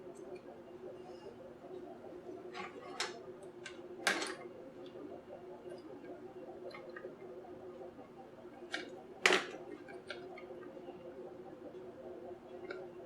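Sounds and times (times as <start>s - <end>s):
light clicks and taps of parts: 8.6s - 10.7s.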